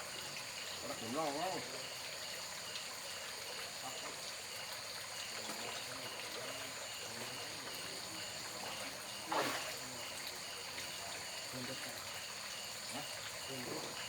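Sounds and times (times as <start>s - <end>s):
trickling water: 0.0s - 14.0s
brief splash: 9.1s - 10.1s.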